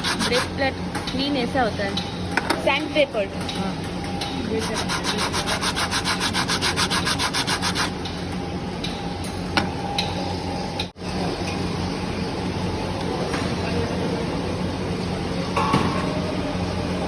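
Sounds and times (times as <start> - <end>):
sandpaper scraping metal: 0.0 - 0.5, 4.6 - 8.0.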